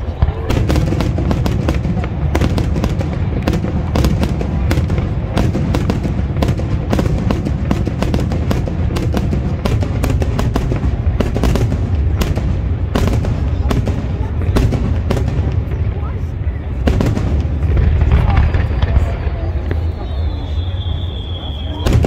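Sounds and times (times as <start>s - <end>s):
fireworks cracks and bangs: 0.0s - 22.0s
deep rumble of bursting shells: 0.4s - 16.0s.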